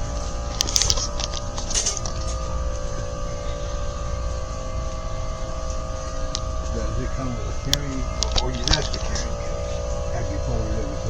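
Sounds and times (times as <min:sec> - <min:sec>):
handling clicks and rustling: 0:00.0 - 0:04.6, 0:05.6 - 0:09.7
electrical hum with low rumble: 0:00.0 - 0:11.0.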